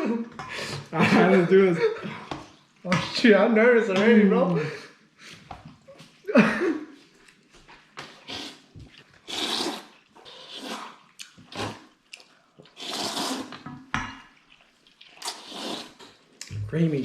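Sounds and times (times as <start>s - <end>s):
people slurping soup: 0.0s - 1.1s, 8.0s - 16.7s.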